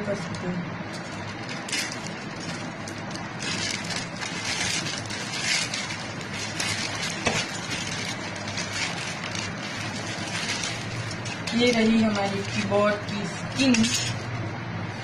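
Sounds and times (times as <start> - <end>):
packaging crinkling and rustling: 0.9 - 14.2.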